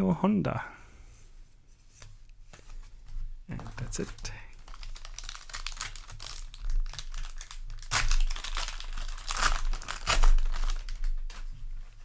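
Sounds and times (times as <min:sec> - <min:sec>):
plastic wrapper crinkling and tearing: 0:03.5 - 0:12.0.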